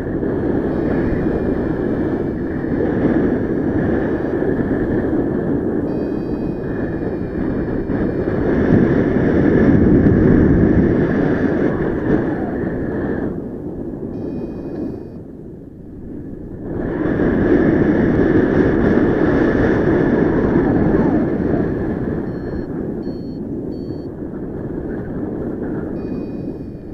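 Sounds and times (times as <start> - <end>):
wind rushing over microphone: 0.0 - 26.9
short electronic beeps: 5.9 - 7.9, 14.2 - 15.2, 22.3 - 24.1, 26.0 - 26.9.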